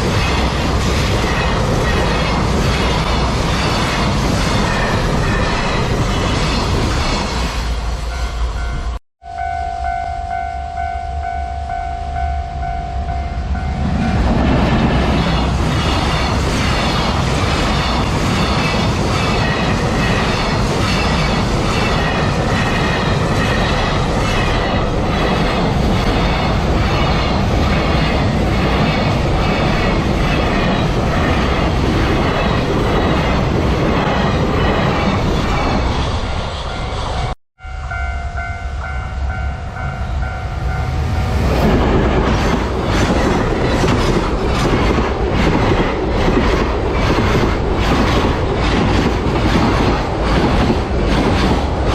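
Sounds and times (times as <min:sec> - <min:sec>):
freight train wheel clatter: 0:00.0 - 0:07.6, 0:13.8 - 0:37.4, 0:41.0 - 0:51.9
level crossing bell ringing: 0:08.2 - 0:14.0, 0:37.6 - 0:41.0.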